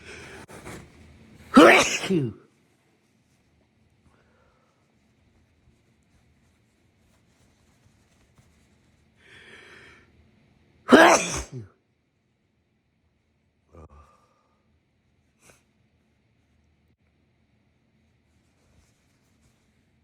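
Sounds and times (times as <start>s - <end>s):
person sneezing: 1.5s - 2.4s, 10.9s - 11.7s.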